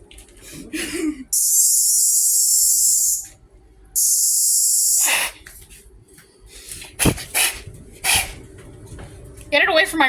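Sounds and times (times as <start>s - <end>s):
cicada buzzing: 1.4s - 3.3s, 4.0s - 5.3s.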